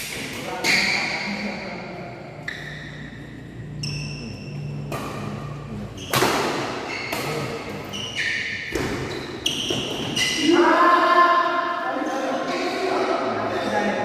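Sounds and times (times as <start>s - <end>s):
rackets hitting shuttlecock: 4.8s - 7.5s.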